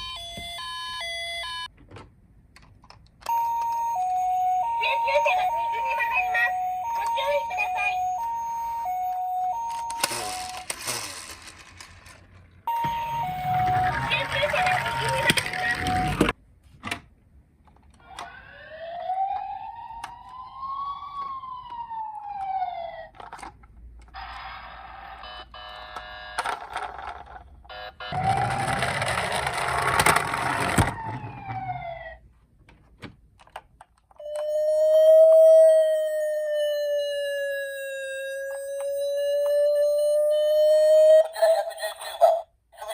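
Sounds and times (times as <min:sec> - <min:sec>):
toy siren hi-lo tones: 0:03.3 - 0:11.1, 0:12.7 - 0:16.3, 0:18.1 - 0:23.1, 0:34.2 - 0:41.7.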